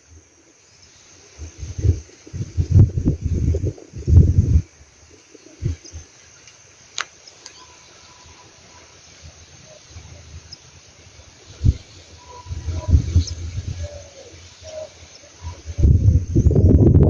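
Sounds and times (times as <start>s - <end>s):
dove cooing: 11.6s - 16.6s.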